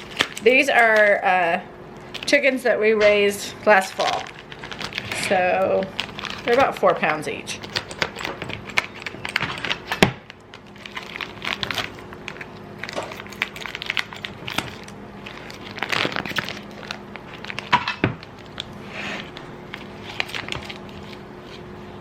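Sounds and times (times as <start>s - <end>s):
plastic crinkling and rustling: 0.0s - 1.2s, 2.0s - 2.4s, 3.7s - 22.0s
faint steady hum: 0.0s - 22.0s.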